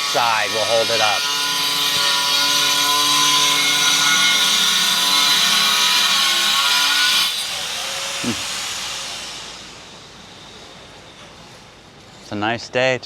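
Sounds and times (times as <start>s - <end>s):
electric power tool whining: 0.0s - 9.5s.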